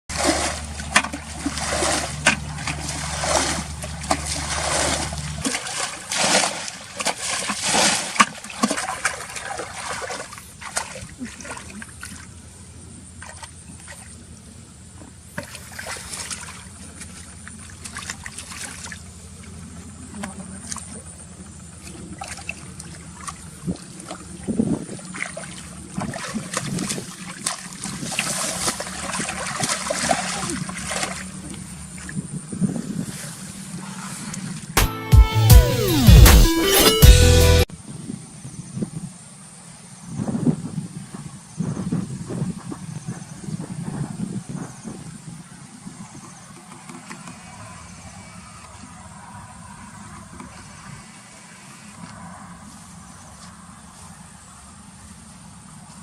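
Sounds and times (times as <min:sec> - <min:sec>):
water splashing and sloshing: 0:00.0 - 0:34.9, 0:41.2 - 0:54.1
low hum: 0:00.1 - 0:06.2.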